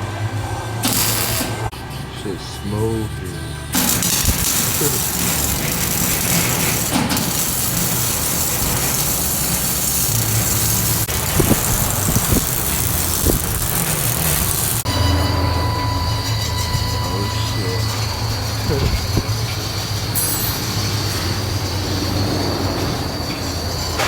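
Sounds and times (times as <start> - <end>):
road and wind noise: 0.0 - 4.5, 8.6 - 15.9, 16.5 - 24.0
engine and exhaust rumble: 0.0 - 24.0.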